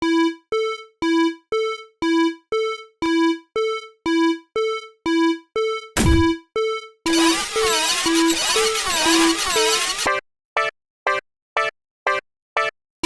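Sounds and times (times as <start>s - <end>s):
brief noisy burst: 7.1s - 10.1s.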